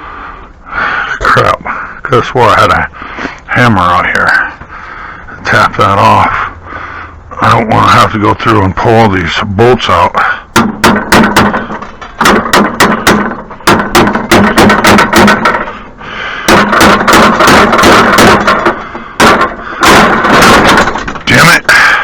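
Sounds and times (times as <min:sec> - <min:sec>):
hammer striking metal: 0:10.6 - 0:15.7, 0:16.4 - 0:21.1.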